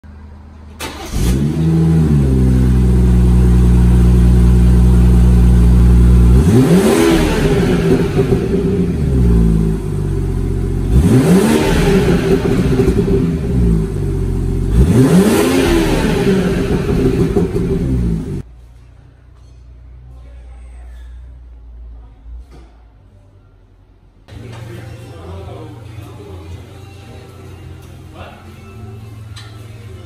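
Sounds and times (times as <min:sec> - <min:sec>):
car engine starting and revving: 0:00.7 - 0:18.4.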